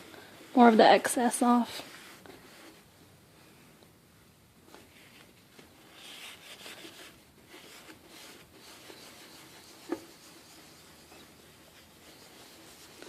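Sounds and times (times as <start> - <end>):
paper towel rubbing plastic: 5.8 - 13.0.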